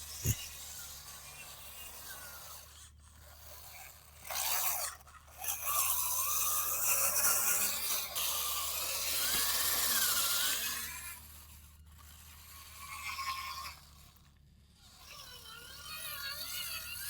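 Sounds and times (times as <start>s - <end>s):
scraping of soil: 0.0s - 0.9s
small electric motor whining: 0.0s - 17.0s.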